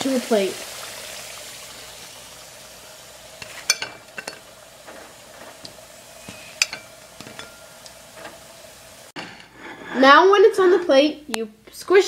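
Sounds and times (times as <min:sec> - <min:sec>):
food sizzling in hot oil: 0:00.0 - 0:10.3
utensil clinking against pan: 0:03.4 - 0:04.4, 0:06.3 - 0:08.3.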